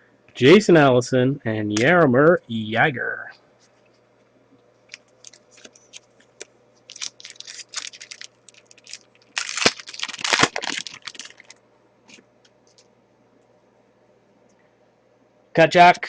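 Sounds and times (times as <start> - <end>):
wrapper tearing and crinkling: 4.9 - 6.0, 6.9 - 11.6.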